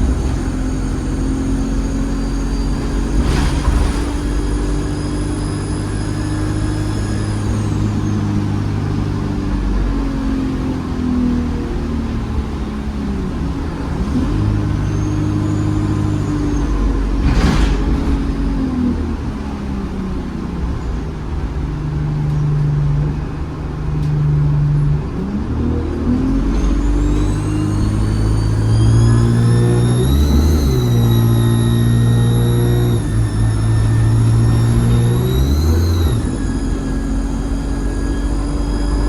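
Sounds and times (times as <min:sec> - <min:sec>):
turbocharger whistle: 0:00.0 - 0:08.7, 0:14.2 - 0:17.2, 0:26.6 - 0:39.0
bus engine pulling away: 0:00.0 - 0:39.0.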